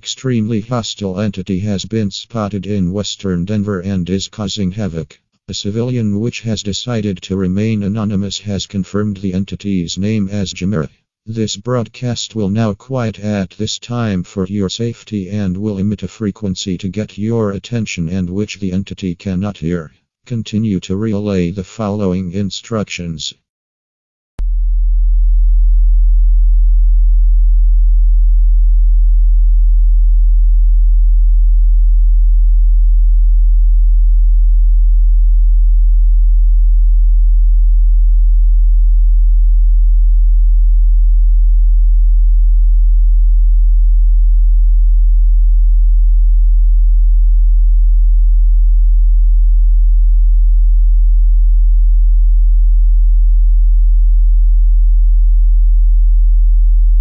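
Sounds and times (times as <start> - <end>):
low electronic sine tone: 24.4 - 57.0.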